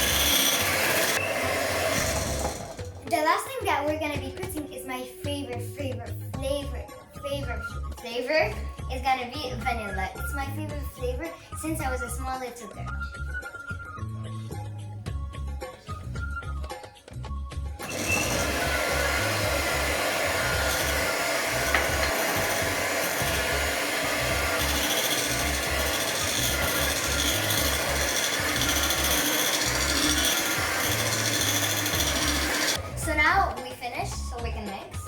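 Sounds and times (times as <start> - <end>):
electric mixer running: 0.0 - 3.0, 17.8 - 32.8.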